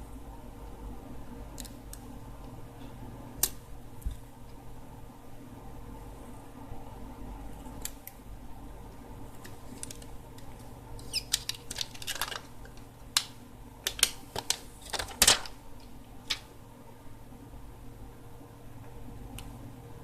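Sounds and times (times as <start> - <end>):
plastic film crackling: 9.4 - 15.6.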